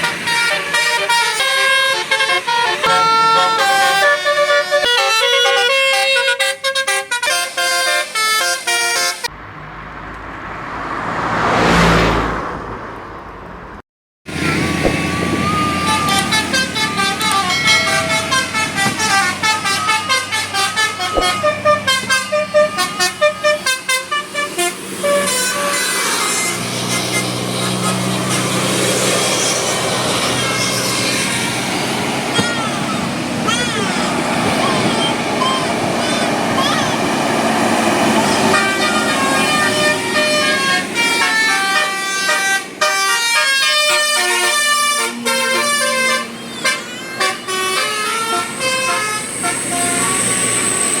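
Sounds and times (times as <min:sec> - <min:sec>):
multi-tone bus horn melody: 0:00.0 - 0:09.3, 0:14.3 - 0:51.0
vehicle passing by: 0:09.4 - 0:23.6, 0:24.7 - 0:41.8
low engine hum: 0:14.3 - 0:42.6.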